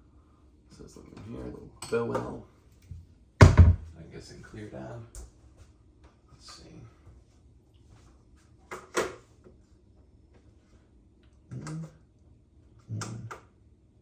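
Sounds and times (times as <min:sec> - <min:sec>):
sharp knocks: 0:03.4 - 0:03.9.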